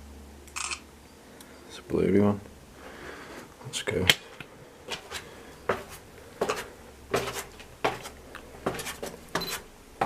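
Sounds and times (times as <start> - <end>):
footsteps climbing stairs: 4.4 - 10.0.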